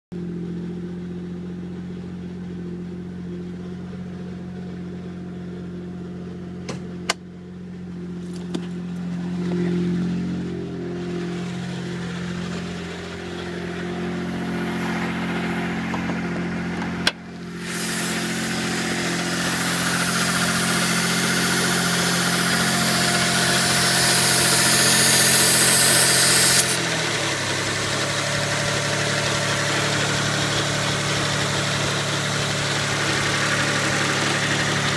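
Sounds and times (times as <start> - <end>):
car engine idling: 0.2 - 34.9
hiss: 17.5 - 26.8.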